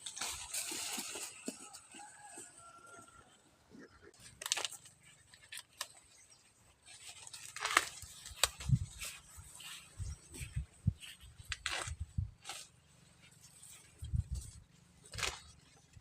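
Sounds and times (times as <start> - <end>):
dry corn husks rustling and tearing: 0.0 - 2.5, 4.2 - 16.0.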